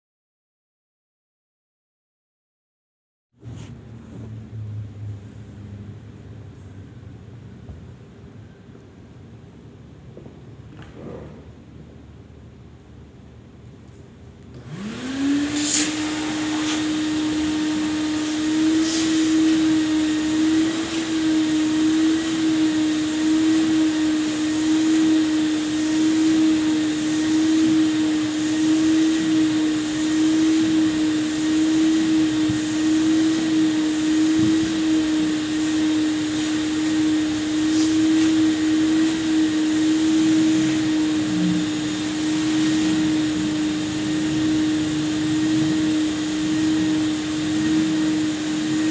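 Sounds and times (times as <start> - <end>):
vacuum cleaner running: 3.4 - 4.8, 14.4 - 48.9.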